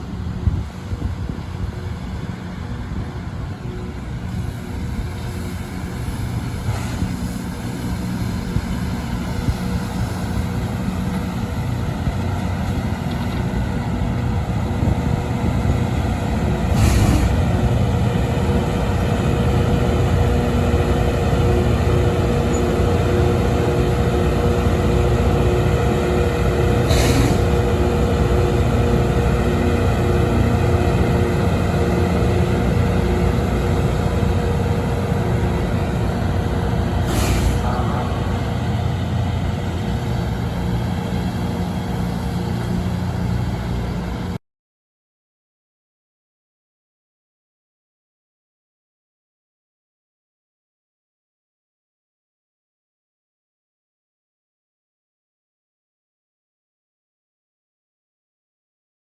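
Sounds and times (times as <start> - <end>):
train diesel engines running: 0.0 - 44.4
hiss bursts: 4.3 - 8.6, 26.8 - 27.7, 36.8 - 38.6.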